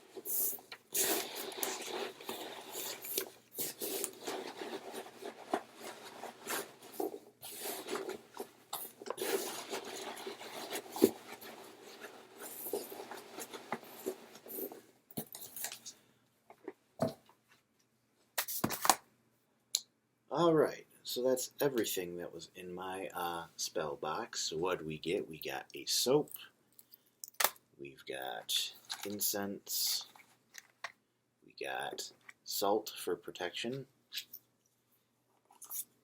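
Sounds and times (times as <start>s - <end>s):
hands rummaging through box: 0.0s - 15.9s, 28.8s - 29.2s.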